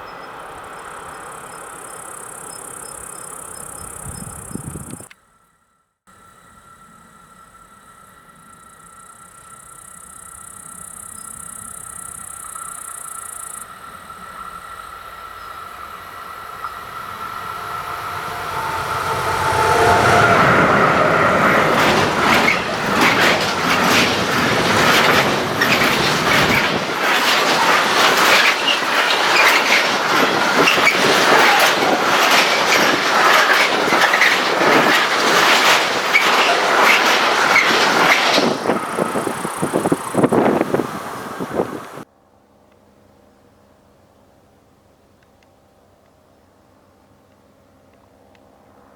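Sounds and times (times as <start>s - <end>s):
train passing: 0.0s - 5.1s, 6.1s - 42.6s
wheels clattering over rails: 16.6s - 42.0s.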